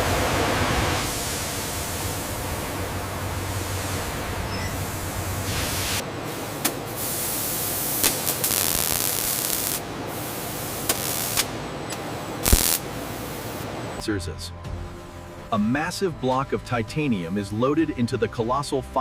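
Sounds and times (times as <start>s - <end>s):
hissing industrial machine: 0.0s - 14.0s.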